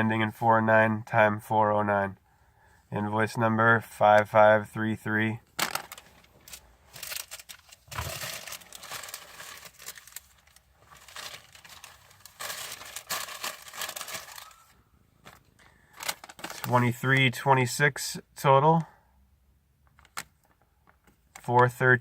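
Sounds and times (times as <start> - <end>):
paper receipts crinkling: 5.6 - 17.1.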